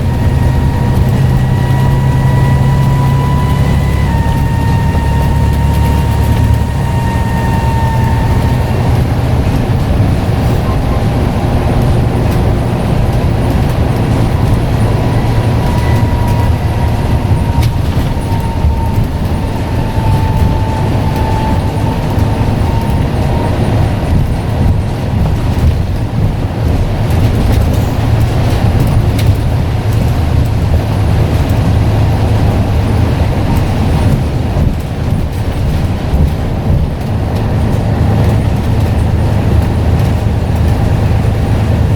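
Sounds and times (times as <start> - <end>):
turbocharger whistle: 0.0 - 11.2, 13.7 - 23.9
bus diesel engine drone: 0.0 - 41.9.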